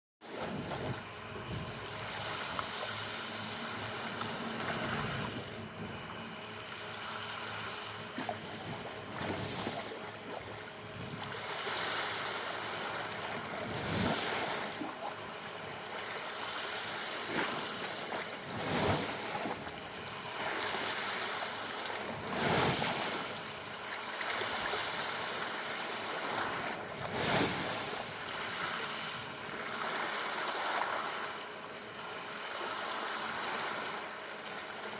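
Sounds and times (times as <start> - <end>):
sea waves rushing against shore: 7.0 - 31.3.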